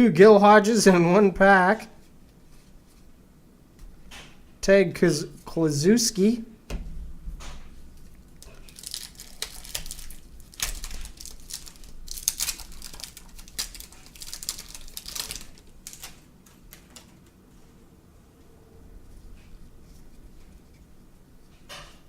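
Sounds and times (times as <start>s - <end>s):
cards being flipped through: 7.4s - 17.4s.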